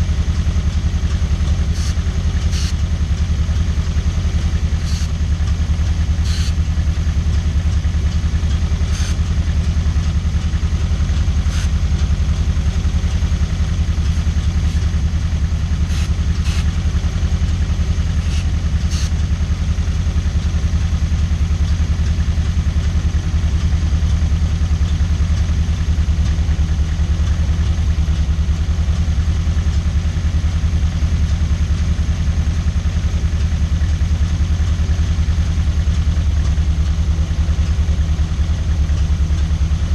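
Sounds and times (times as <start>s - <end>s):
car engine idling: 0.0s - 39.9s
spray can hissing: 1.8s - 2.7s, 4.8s - 5.1s, 6.2s - 6.6s, 8.9s - 9.2s, 15.9s - 16.7s, 18.2s - 19.1s.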